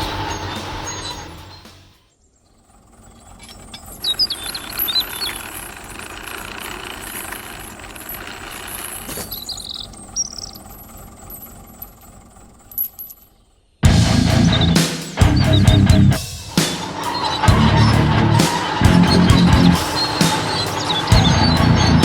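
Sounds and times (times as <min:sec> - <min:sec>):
rattling electric motors and gears: 0:00.0 - 0:22.0
short high squeaks: 0:02.5 - 0:13.7.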